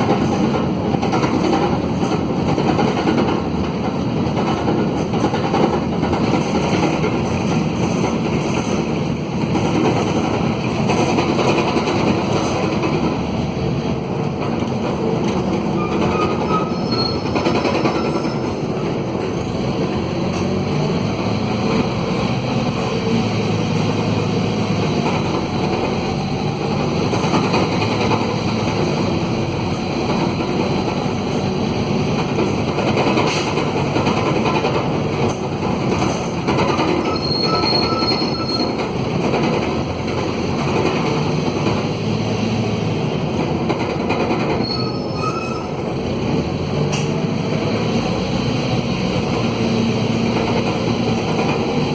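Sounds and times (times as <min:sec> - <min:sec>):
brief high squeaks: 0:15.8 - 0:18.5, 0:37.1 - 0:38.8, 0:44.6 - 0:45.8.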